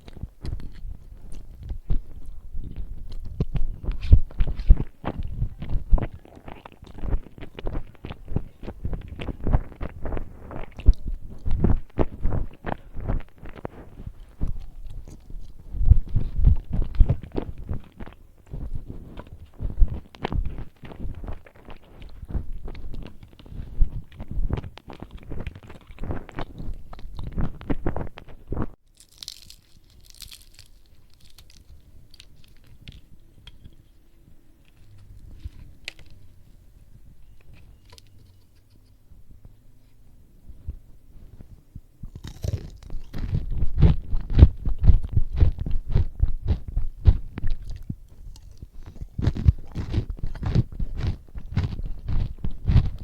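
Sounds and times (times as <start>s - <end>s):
chewing and biting food: 0.0s - 34.0s, 34.6s - 36.4s, 42.0s - 53.0s.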